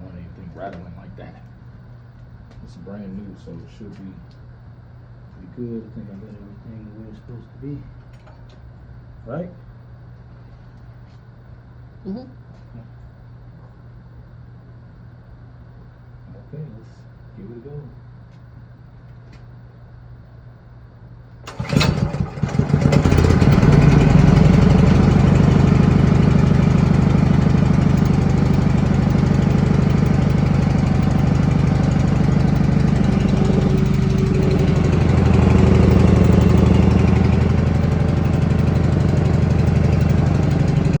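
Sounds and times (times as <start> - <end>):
generator engine running: 21.4 - 41.0.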